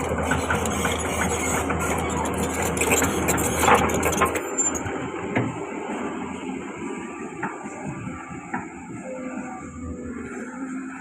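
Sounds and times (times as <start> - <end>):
digging knocks and clatter: 0.0 - 4.9
excavator diesel engine running: 0.0 - 11.0.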